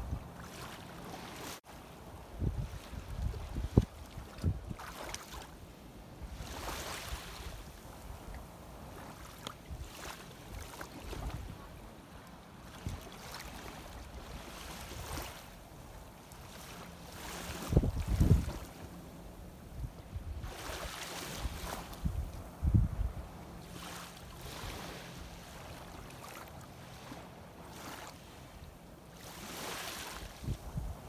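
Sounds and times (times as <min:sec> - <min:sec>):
wind buffeting microphone: 0:02.2 - 0:04.8, 0:17.6 - 0:18.7, 0:19.7 - 0:23.4, 0:30.4 - 0:31.0.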